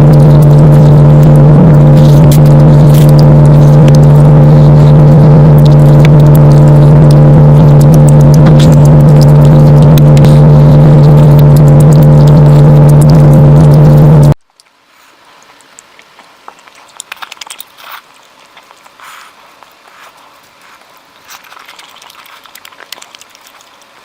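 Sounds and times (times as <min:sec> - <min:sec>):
loud low-pitched hum: 0:00.0 - 0:14.4.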